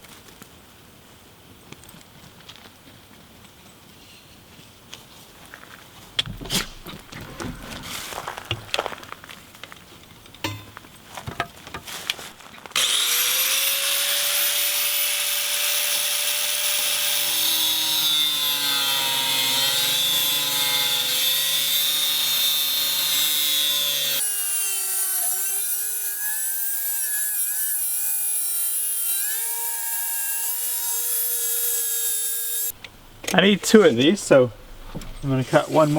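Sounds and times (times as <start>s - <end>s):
handling clicks and knocks: 6.2s - 12.2s
angle grinder cutting steel pipe: 12.8s - 32.8s, 35.1s - 35.9s.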